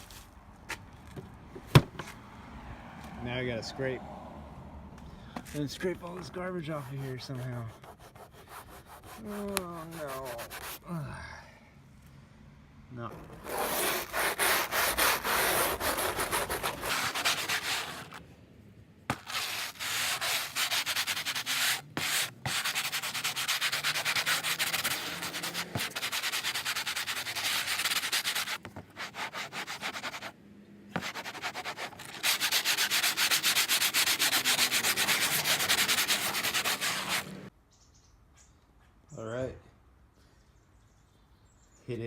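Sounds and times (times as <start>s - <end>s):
hand scrubbing foam: 6.0s - 10.8s, 13.2s - 18.2s, 19.1s - 30.3s, 31.0s - 37.5s.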